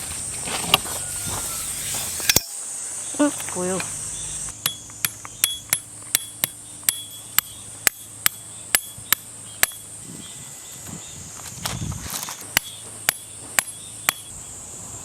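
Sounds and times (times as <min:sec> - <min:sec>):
high insect buzz: 0:00.0 - 0:15.0
hammer striking tent pegs: 0:04.6 - 0:09.9, 0:12.6 - 0:14.3.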